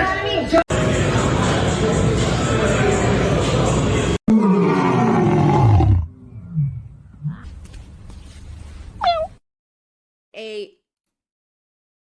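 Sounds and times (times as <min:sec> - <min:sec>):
deep roar falling in pitch: 0:04.3 - 0:07.4.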